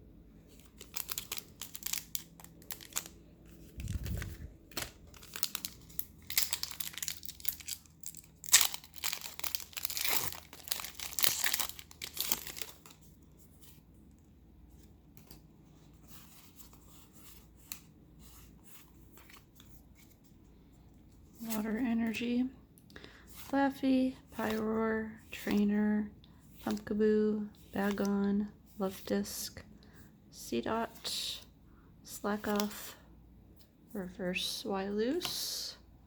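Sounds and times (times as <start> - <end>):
foil wrapper tearing and crinkling: 0.8 - 3.1, 3.8 - 13.0.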